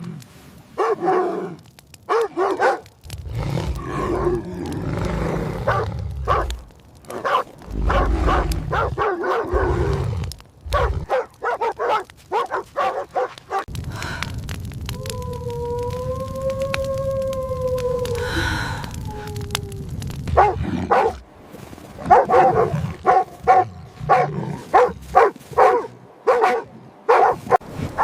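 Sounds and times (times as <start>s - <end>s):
dogs barking and yelping: 5.7s - 6.5s, 7.2s - 9.7s, 10.7s - 13.7s, 20.4s - 21.2s, 22.1s - 28.0s
low rumble: 13.7s - 21.4s.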